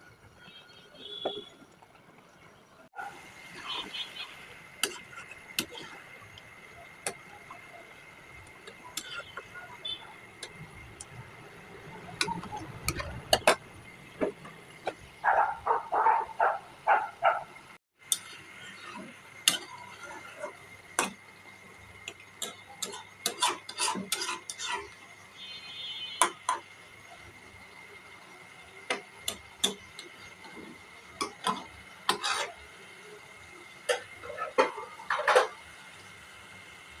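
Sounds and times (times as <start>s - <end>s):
spoon scraping a cooking pot: 4.8s - 11.2s, 11.9s - 13.6s, 18.1s - 21.2s, 22.0s - 25.0s, 28.9s - 32.6s.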